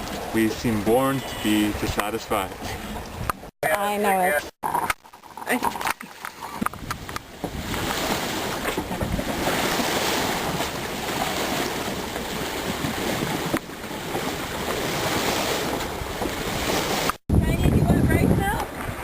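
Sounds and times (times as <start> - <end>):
rush of wind and water: 0.0 - 19.0
wind buffeting microphone: 5.8 - 19.0.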